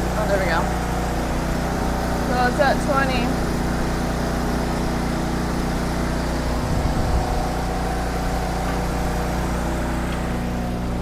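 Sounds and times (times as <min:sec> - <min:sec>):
low machine hum: 0:00.0 - 0:11.0.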